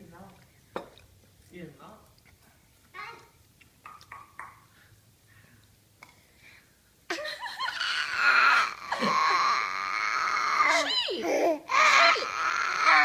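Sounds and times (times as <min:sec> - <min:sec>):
child squealing: 0:07.7 - 0:13.0.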